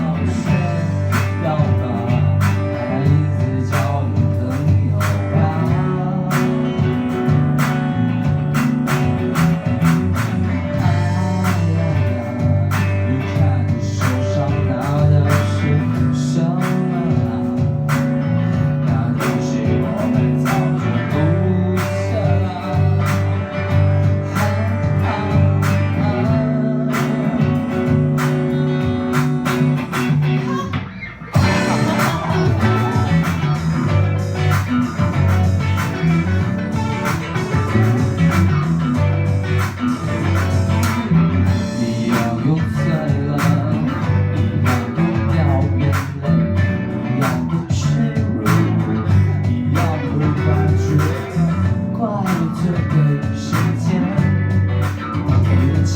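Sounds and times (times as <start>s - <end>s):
guitars: 0.0s - 55.9s
live rock band playing: 0.0s - 55.9s.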